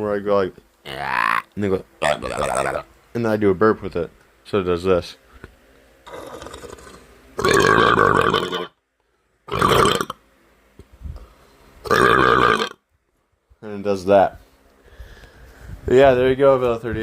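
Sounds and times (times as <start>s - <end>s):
quiet hiss: 0.0s - 17.0s
boy burping loudly: 0.8s - 2.8s, 6.1s - 8.7s, 9.5s - 10.2s, 11.9s - 12.8s.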